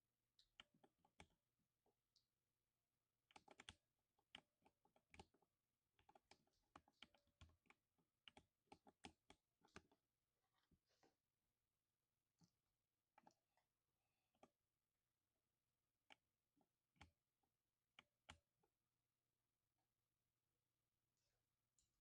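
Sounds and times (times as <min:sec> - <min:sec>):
mechanical keyboard typing: 0:03.3 - 0:05.4.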